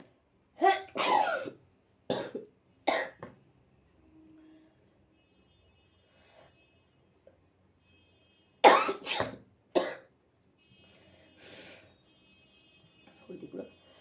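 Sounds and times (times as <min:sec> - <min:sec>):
breathy sniff: 0:10.9 - 0:12.0.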